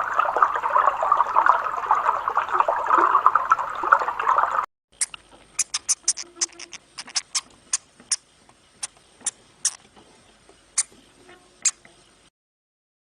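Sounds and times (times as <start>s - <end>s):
rodent squeaking: 5.0s - 8.2s, 8.8s - 9.8s, 10.8s - 11.0s, 11.6s - 11.8s.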